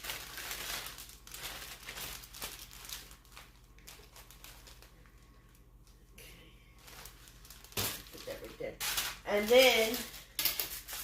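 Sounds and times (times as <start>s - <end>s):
plastic bag crinkling: 0.0s - 5.9s, 6.8s - 11.0s.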